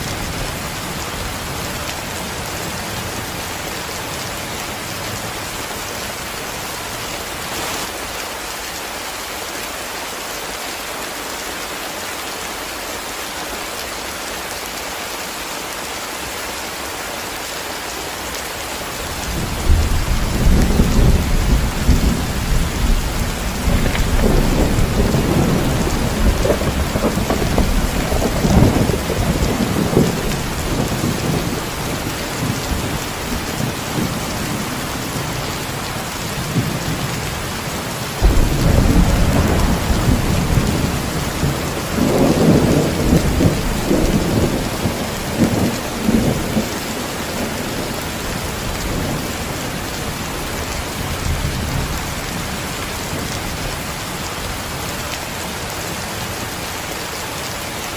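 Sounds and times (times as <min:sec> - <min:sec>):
heavy rain: 0:00.0 - 0:57.9
rolling thunder: 0:19.2 - 0:34.8, 0:38.2 - 0:48.0.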